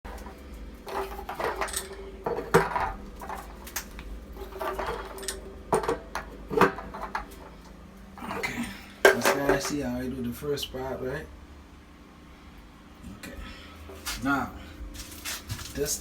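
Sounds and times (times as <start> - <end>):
hard objects clattering and knocking: 0.0 - 9.8.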